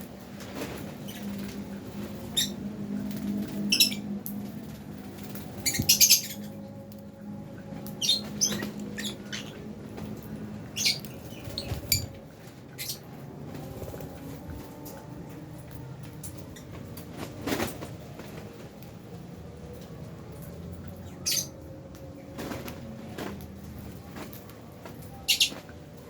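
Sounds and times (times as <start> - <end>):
birds chirping and squeaking: 0.2 - 18.4, 19.6 - 26.0.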